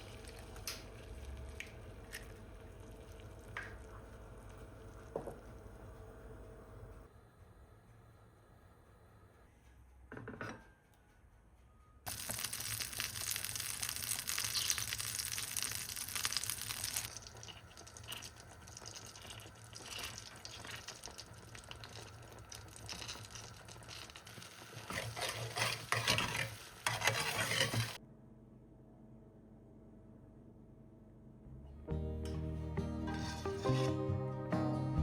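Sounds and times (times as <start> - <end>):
dishes clattering: 10.1 - 10.6.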